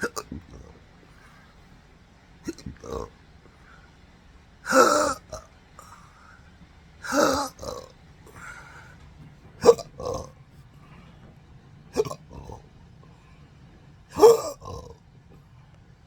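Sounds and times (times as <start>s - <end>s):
man hiccuping: 0.0s - 0.8s, 2.4s - 3.2s, 4.6s - 6.0s, 7.0s - 8.6s, 9.6s - 10.4s, 11.9s - 12.7s, 14.1s - 15.0s.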